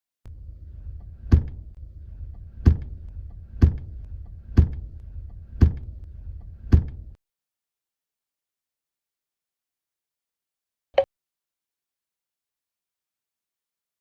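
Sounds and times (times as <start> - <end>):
steady low rumble: 0.2 - 7.2
heavy thuds: 0.9 - 7.2.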